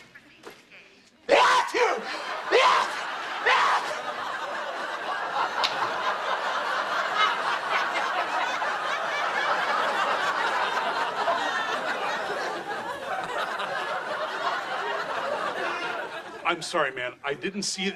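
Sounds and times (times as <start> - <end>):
studio audience laughing: 1.3 - 16.7.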